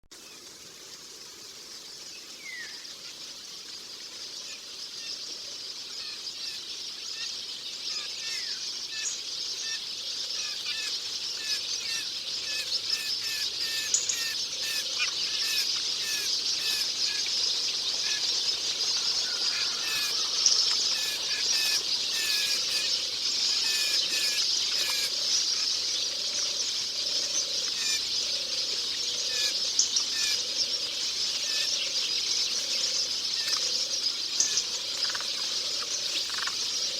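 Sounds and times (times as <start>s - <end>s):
small birds chirping: 2.0s - 36.9s.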